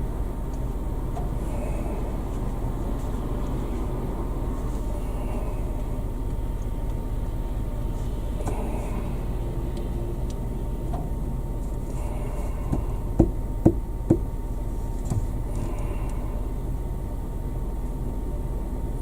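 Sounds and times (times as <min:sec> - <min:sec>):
car road and engine rumble: 0:00.0 - 0:19.0
sharp thumps: 0:12.7 - 0:14.3.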